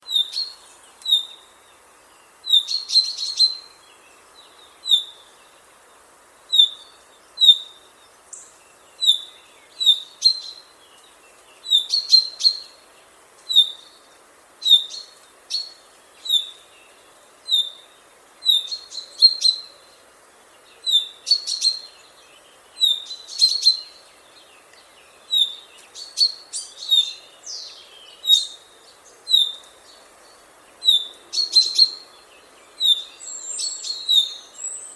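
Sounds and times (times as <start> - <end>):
chaffinch calling: 2.4 - 3.8, 11.6 - 12.8, 17.4 - 19.8, 22.8 - 24.0, 25.2 - 29.7, 30.8 - 32.1, 32.7 - 34.9.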